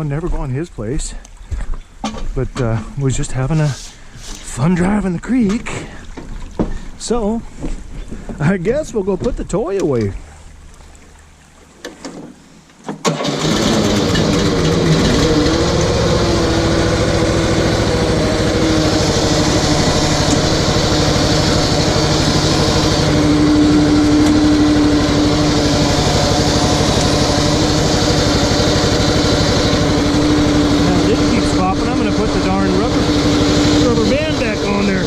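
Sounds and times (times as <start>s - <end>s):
engine running: 13.0s - 35.0s.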